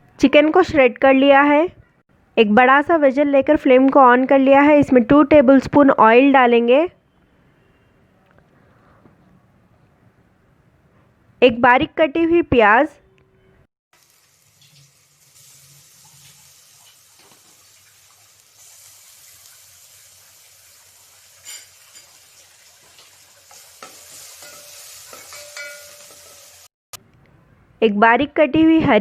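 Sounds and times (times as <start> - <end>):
onion sizzling in hot oil: 14.0 - 26.7.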